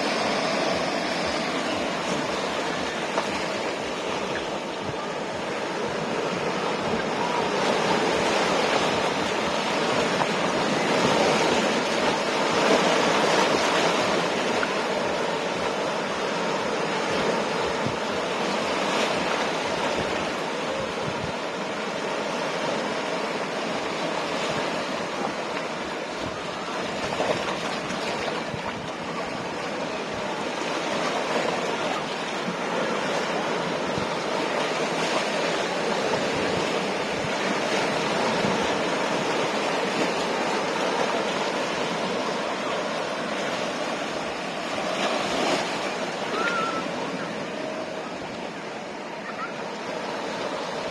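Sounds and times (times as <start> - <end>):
ocean surf washing ashore: 0.0 - 50.9.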